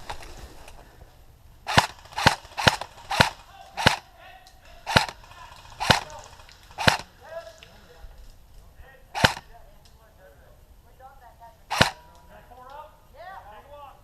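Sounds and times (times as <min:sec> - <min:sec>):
airsoft rifle shots: 0:01.6 - 0:04.1, 0:04.7 - 0:07.1, 0:09.2 - 0:09.6, 0:11.7 - 0:12.1.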